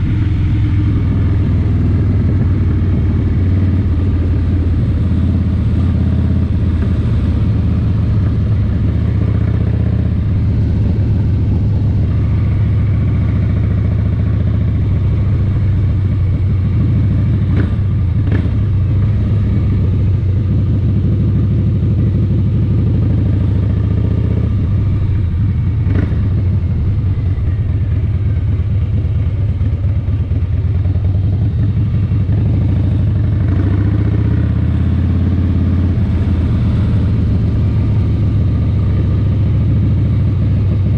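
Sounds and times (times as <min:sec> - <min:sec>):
vehicle engine rumbling: 0:00.0 - 0:40.9.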